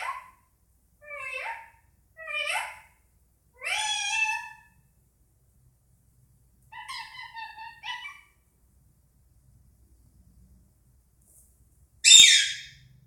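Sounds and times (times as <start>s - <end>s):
parakeet calling: 3.6s - 4.7s, 6.7s - 8.3s, 12.0s - 12.8s.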